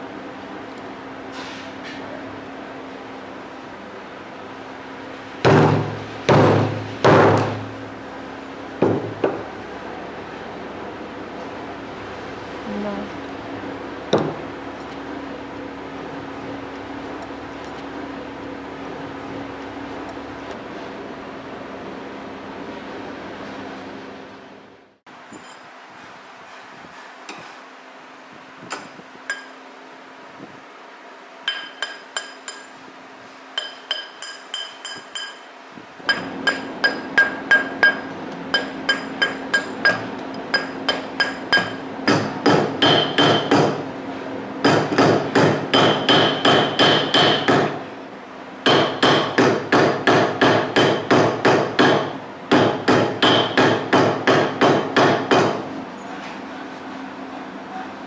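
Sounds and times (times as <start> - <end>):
small hammer tapping metal: 31.5 - 32.7, 33.6 - 35.5, 36.1 - 43.8.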